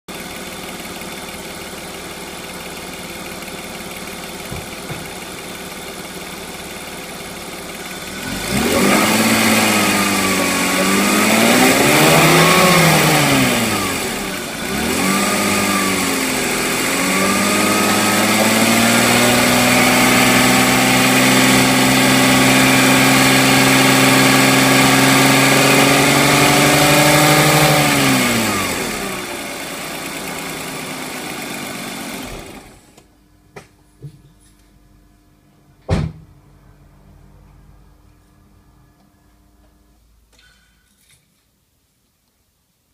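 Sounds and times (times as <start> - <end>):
car engine idling: 0.1 - 32.8
engine revving: 7.7 - 32.8.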